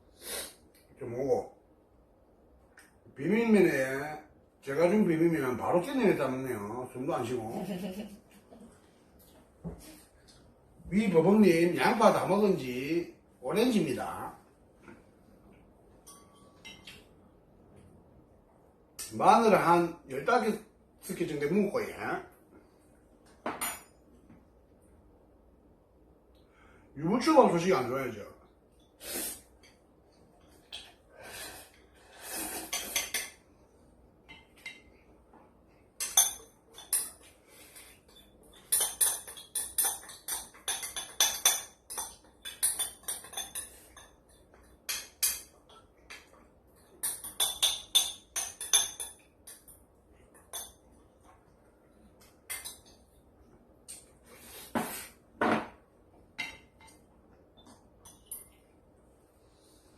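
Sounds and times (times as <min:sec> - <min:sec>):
utensils clinking against dishes: 0:16.0 - 0:17.1, 0:32.7 - 0:33.4, 0:36.0 - 0:51.5, 0:56.4 - 0:58.7.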